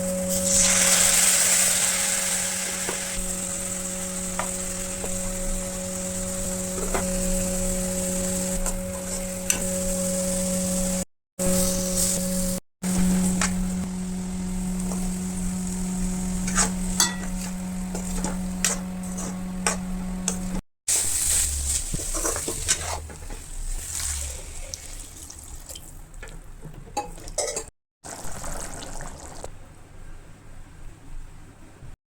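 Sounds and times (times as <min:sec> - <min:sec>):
food sizzling in a pan: 0:00.0 - 0:25.6, 0:28.1 - 0:29.5
steady hum: 0:02.4 - 0:22.0
spoon scraping a pan: 0:16.3 - 0:24.3.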